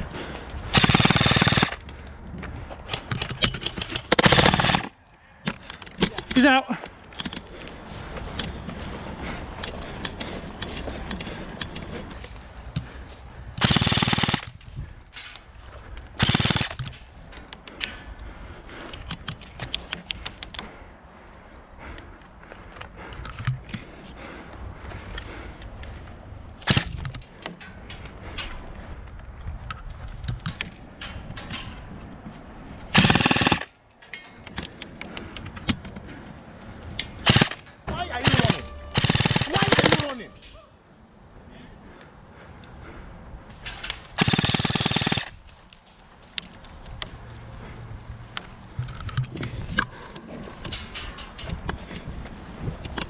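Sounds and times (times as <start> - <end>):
airsoft gun full-auto bursts: 0.7 - 1.8, 4.0 - 4.9, 13.6 - 14.6, 15.6 - 17.0, 32.9 - 34.2, 37.2 - 40.4, 43.8 - 45.4.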